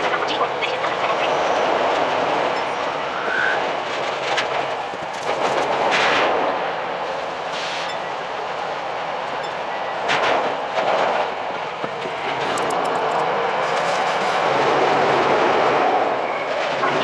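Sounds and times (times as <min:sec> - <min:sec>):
train wheels on rails: 0:00.0 - 0:17.0.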